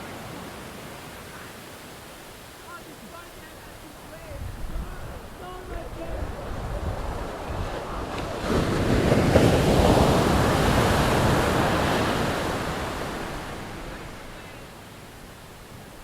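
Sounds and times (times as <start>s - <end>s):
ocean wave breaking: 0.0s - 16.0s
wind rumble on microphone: 4.1s - 13.9s.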